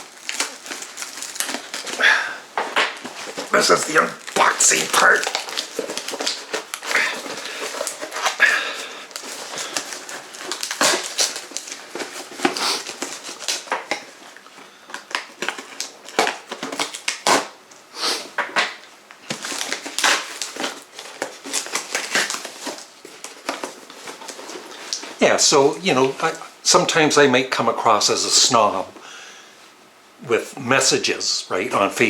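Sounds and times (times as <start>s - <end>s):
cardboard box being torn open: 2.9s - 14.1s, 19.3s - 25.0s.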